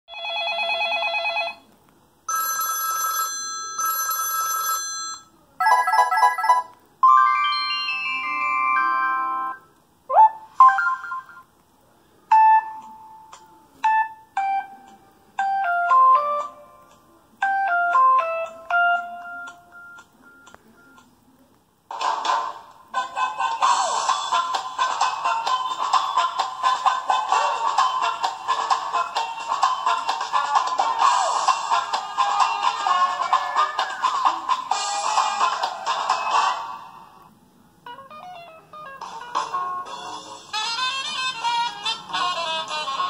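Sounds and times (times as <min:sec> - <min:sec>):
trilling phone ring: 0:02.3 - 0:08.1
buzzy pulsing phone ringtone: 0:05.6 - 0:09.5.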